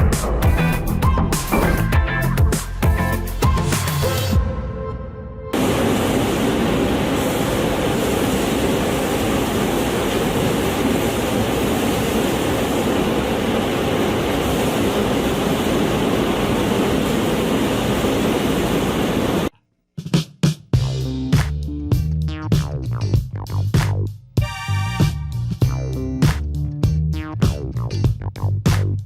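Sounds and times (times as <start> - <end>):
machinery rushing noise: 5.5 - 19.5.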